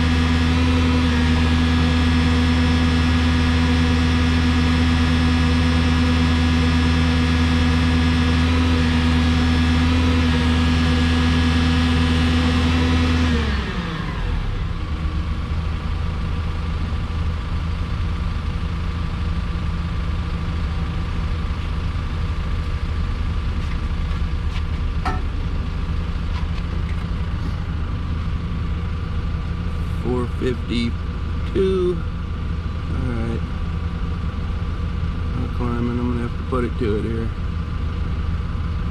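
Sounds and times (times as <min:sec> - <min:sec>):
diesel engine revving and idling: 0:00.0 - 0:38.9.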